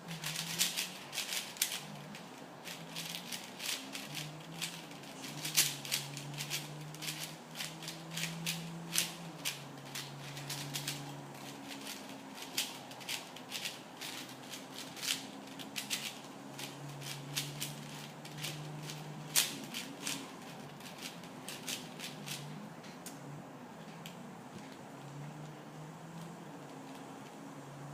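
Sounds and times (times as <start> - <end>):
plastic cube clicking: 0.1 - 20.2.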